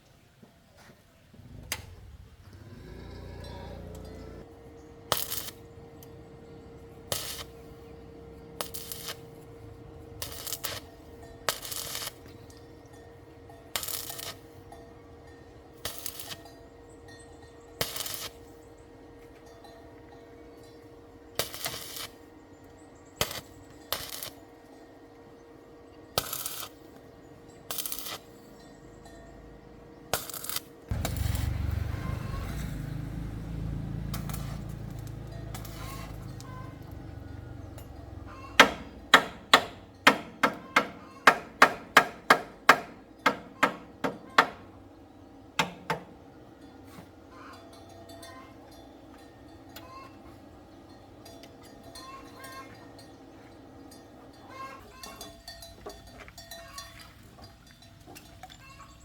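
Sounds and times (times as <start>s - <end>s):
loud low steady sound: 30.9s - 38.1s
sharp metallic clinks and knocks: 34.1s - 44.8s, 45.6s - 58.8s.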